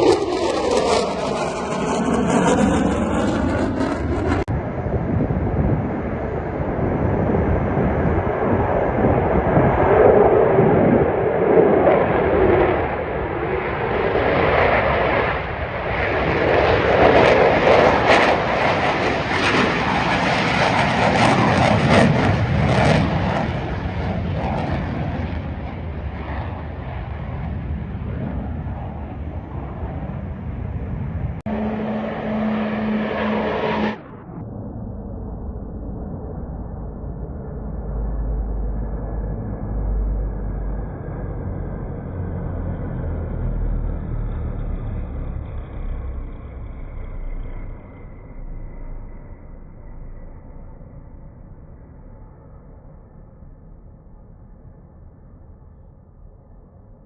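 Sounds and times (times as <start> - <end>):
airplane engine rushing: 0.0 - 57.0
steady hum: 31.5 - 35.6.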